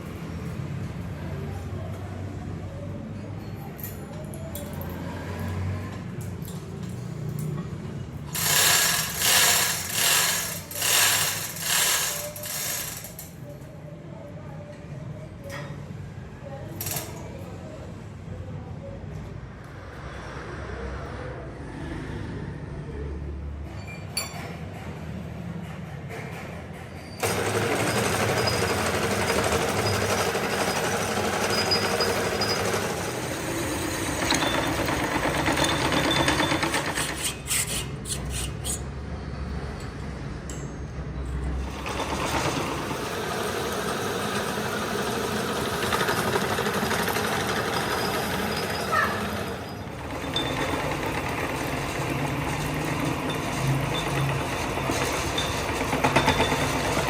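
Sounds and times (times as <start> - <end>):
machine tools working metal: 8.2 - 13.5, 27.0 - 38.8, 41.5 - 57.0.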